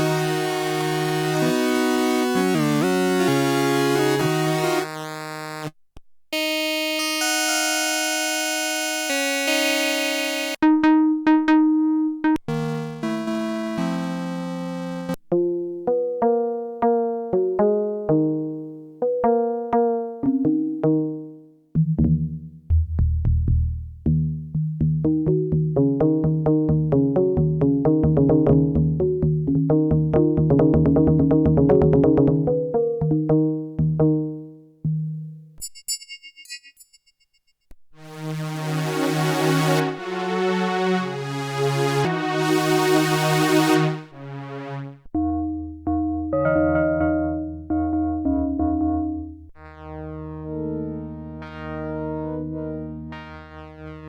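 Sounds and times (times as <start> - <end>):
synthesizer plucked notes: 0.0 - 5.7, 6.4 - 35.6, 38.0 - 54.0
deep pulsing bass line: 21.8 - 34.6, 45.2 - 54.0
synthesizer held tone: 45.2 - 54.0.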